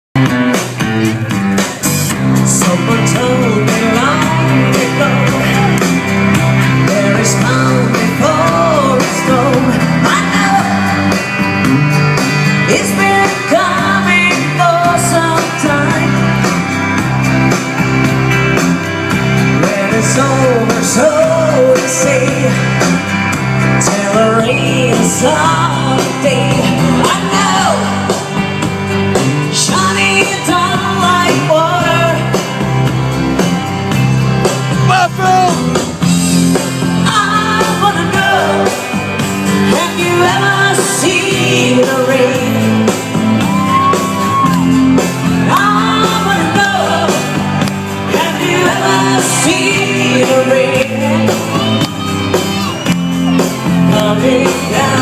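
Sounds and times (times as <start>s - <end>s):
rock band playing: 0.2s - 55.0s
woman singing: 2.5s - 5.7s, 6.8s - 11.2s, 12.6s - 16.5s, 19.6s - 22.7s, 23.8s - 28.3s, 29.5s - 32.4s, 37.0s - 38.9s, 39.6s - 43.7s, 45.4s - 47.4s, 48.1s - 52.0s, 53.8s - 55.0s.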